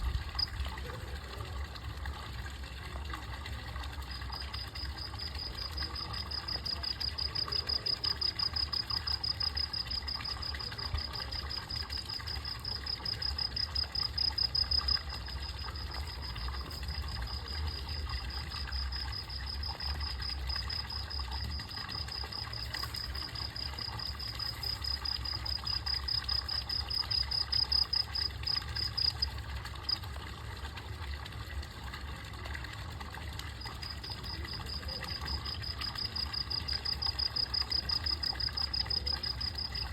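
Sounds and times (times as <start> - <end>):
low steady rumble: 0.0 - 1.2
cricket trilling: 0.0 - 1.4, 3.6 - 30.1, 33.4 - 39.9.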